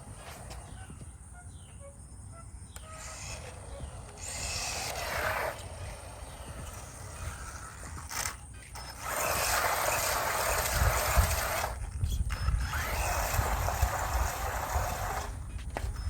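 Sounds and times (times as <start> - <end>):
rc truck motor and gears: 0.0 - 1.3, 2.6 - 16.0
faint bird chirps: 0.6 - 4.8
low wind rumble: 9.6 - 16.0.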